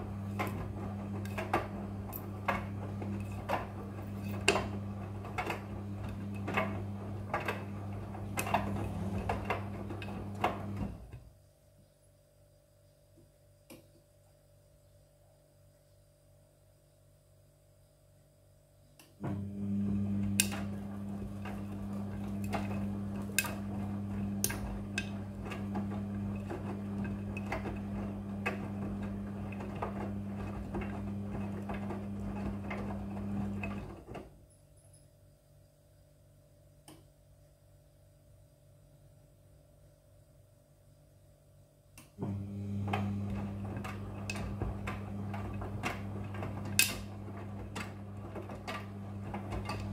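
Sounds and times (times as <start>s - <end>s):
washing machine motor hum: 0.0s - 11.4s, 19.2s - 34.5s, 42.1s - 49.9s.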